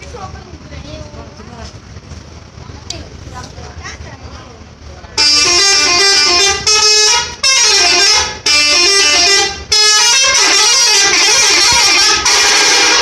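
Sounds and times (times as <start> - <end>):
musical air horn playing a tune: 5.2 - 13.0.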